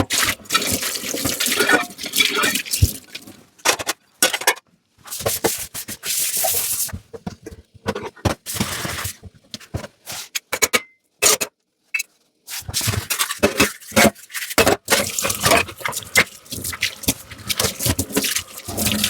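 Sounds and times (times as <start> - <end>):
sponge scrubbing dishes: 0.0 - 3.4, 5.1 - 7.0, 12.5 - 19.0
dishes clinking: 1.6 - 2.8.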